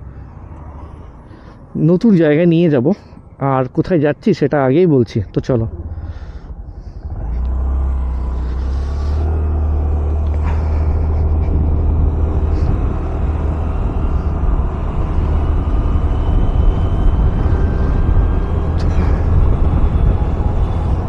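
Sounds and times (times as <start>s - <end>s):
road noise: 0.0s - 21.0s
faint rising whine: 5.8s - 21.0s
scooter engine: 5.8s - 21.0s
wind rumble on microphone: 6.5s - 21.0s.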